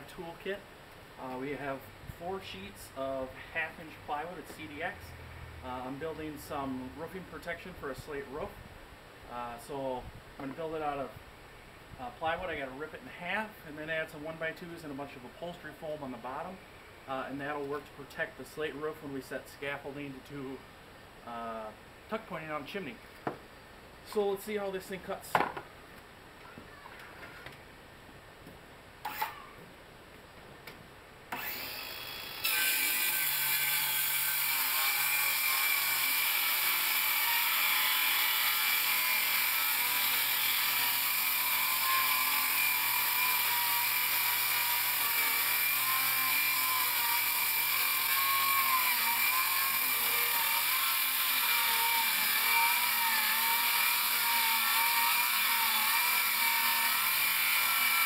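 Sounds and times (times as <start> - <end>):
circular saw cutting plywood: 31.3 - 58.0.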